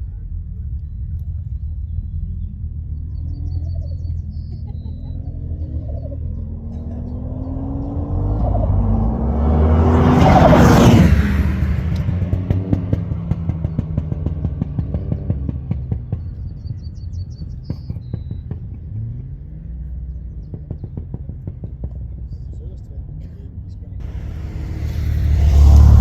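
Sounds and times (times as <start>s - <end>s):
race car passing at full throttle: 5.7s - 15.6s, 24.0s - 26.0s
exhaust popping and banging: 6.3s - 16.8s, 24.0s - 26.0s.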